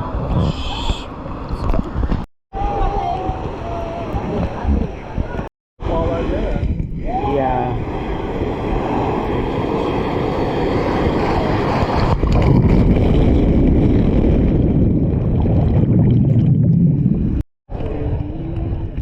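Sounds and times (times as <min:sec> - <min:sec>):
wind buffeting microphone: 0:00.0 - 0:19.0
moving water: 0:07.0 - 0:19.0.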